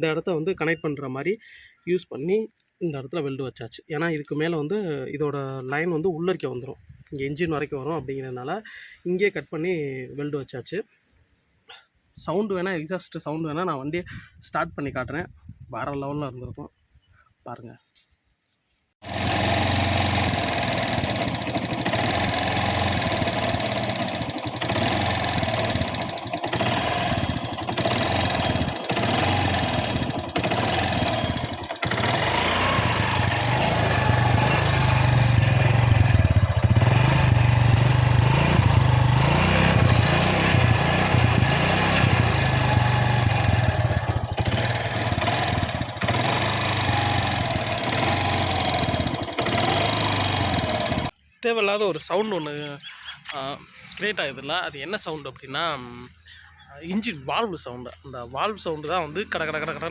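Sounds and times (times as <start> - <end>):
motorcycle engine revving: 19.0 - 51.1
engine valve clatter: 19.1 - 34.9.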